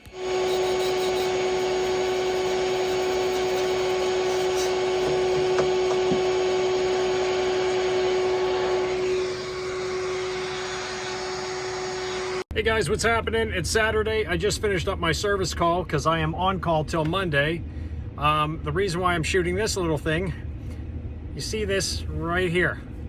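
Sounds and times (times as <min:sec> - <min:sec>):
vacuum cleaner humming: 0:00.0 - 0:12.5.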